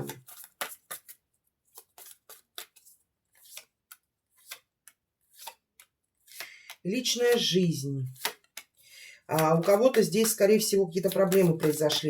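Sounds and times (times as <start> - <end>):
cards clicking and snapping: 0.0 - 12.0.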